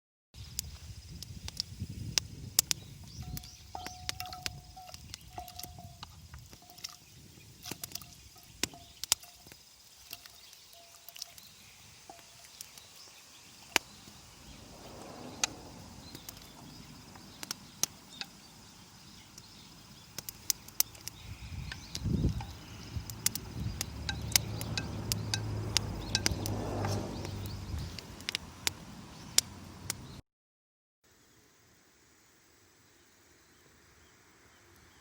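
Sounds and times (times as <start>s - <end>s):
faint outdoor background: 0.4s - 30.2s, 31.0s - 35.0s
wood fire crackling: 7.6s - 30.1s.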